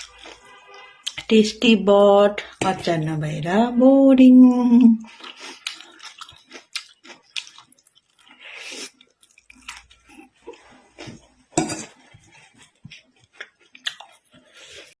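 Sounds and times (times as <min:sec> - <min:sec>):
person chewing noodles: 0:00.0 - 0:01.3, 0:05.0 - 0:15.0
cutlery clinking on plate: 0:11.6 - 0:12.0.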